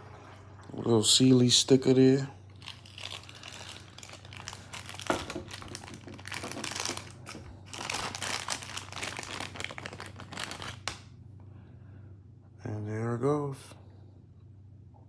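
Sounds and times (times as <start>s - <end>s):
plastic packaging crinkling: 2.5s - 11.1s.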